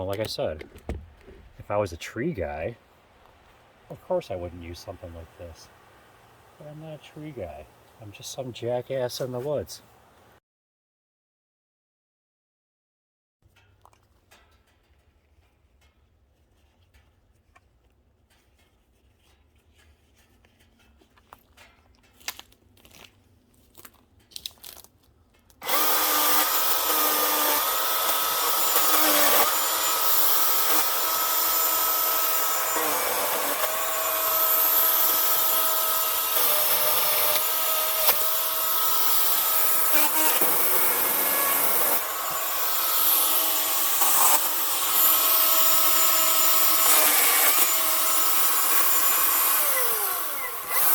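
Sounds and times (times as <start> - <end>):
chain cutting through log: 19.2 - 50.9
electric chainsaw whining: 25.6 - 50.9.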